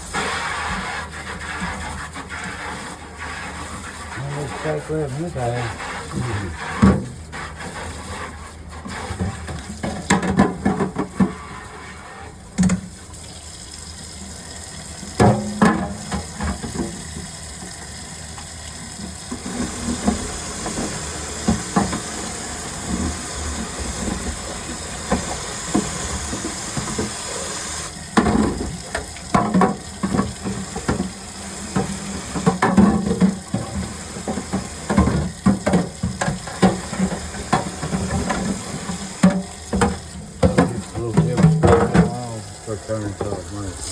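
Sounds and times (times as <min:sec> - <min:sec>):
tap running into sink: 0:08.8 - 0:11.6, 0:12.5 - 0:13.4, 0:15.0 - 0:43.9
knocks and clatter: 0:39.2 - 0:42.2.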